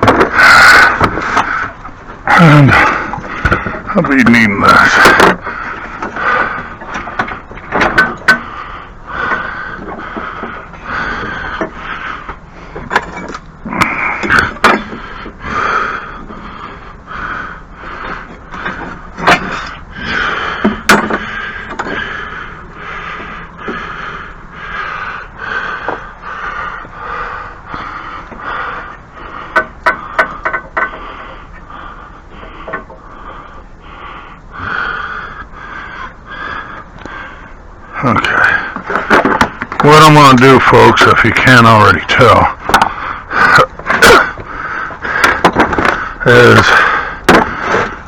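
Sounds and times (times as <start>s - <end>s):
tools clicking and knocking on metal: 6.8s - 8.5s, 29.5s - 31.0s.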